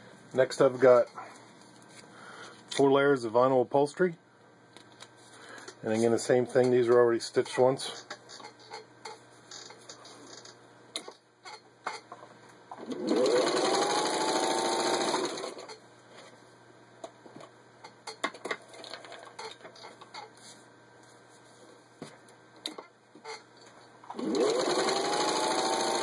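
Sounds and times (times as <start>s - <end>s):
sewing machine motor stitching: 12.8s - 15.7s, 24.1s - 26.0s.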